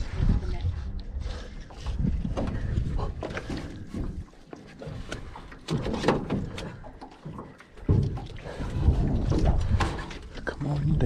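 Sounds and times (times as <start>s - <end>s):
wind buffeting microphone: 0.0s - 4.3s
knocks and clicks on boat: 1.9s - 10.6s.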